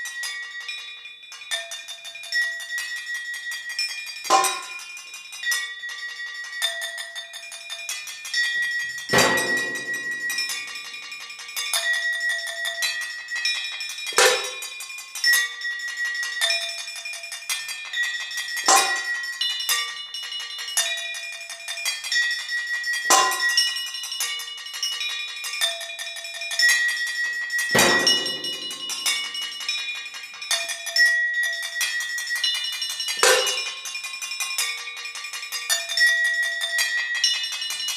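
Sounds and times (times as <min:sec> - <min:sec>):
ringing metallic strikes: 0:04.3 - 0:04.9, 0:09.0 - 0:11.1, 0:14.1 - 0:14.7, 0:18.6 - 0:19.3, 0:23.1 - 0:23.7, 0:27.6 - 0:30.2, 0:33.2 - 0:33.8.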